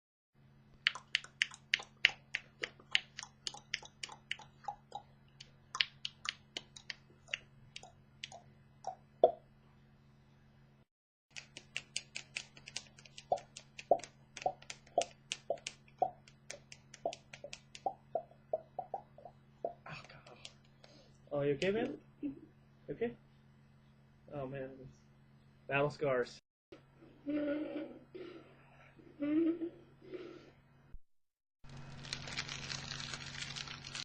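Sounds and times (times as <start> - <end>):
person snapping clicks: 11.3 - 17.8.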